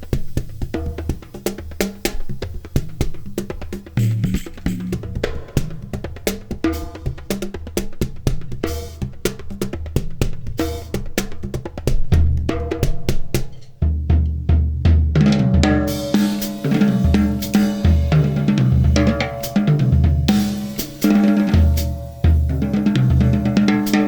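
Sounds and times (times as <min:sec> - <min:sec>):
fast percussion rhythm: 0:00.0 - 0:24.0
deep low drum hits: 0:04.0 - 0:06.3.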